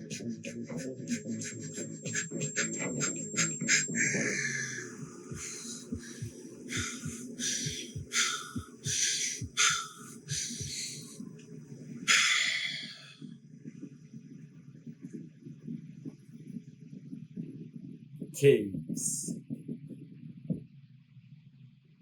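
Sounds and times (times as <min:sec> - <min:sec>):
heavy rhythmic breathing: 0:00.0 - 0:11.3, 0:12.1 - 0:13.3
muffled music: 0:00.0 - 0:22.0.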